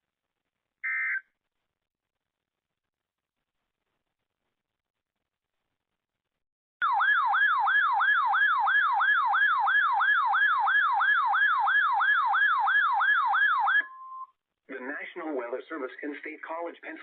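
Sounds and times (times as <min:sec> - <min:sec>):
steady beep tone: 0:00.8 - 0:01.3
warbling siren tone: 0:06.8 - 0:13.9.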